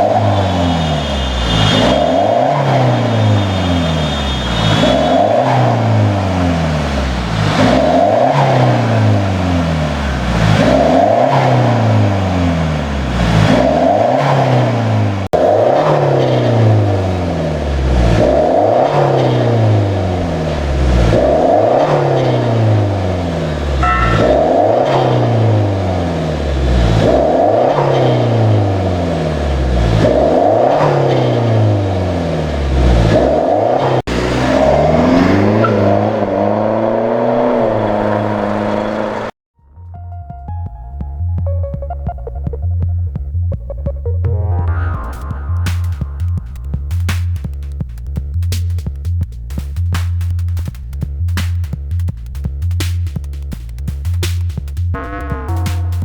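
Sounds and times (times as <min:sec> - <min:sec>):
car engine revving: 0:00.0 - 0:39.4, 0:54.9 - 0:56.0.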